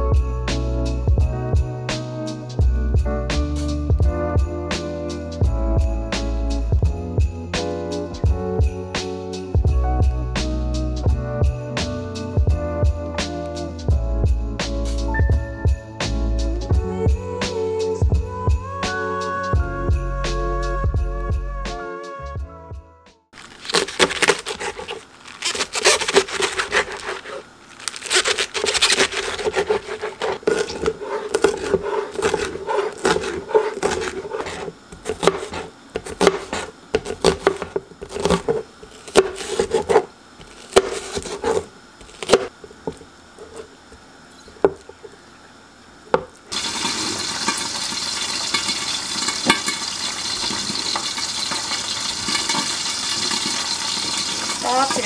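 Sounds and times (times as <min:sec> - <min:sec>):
scraping and knocks on dishes: 0:29.1 - 0:37.8
water tap running: 0:46.5 - 0:55.0.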